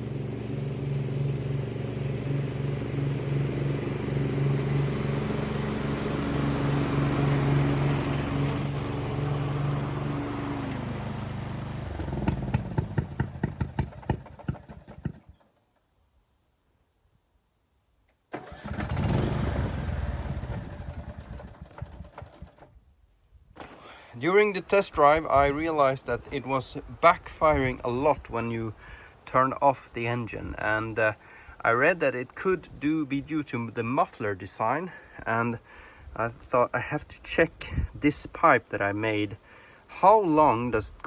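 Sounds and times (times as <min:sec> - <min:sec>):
mower engine running: 0:00.0 - 0:15.5, 0:18.4 - 0:22.8
engine backfire pops: 0:11.8 - 0:15.5.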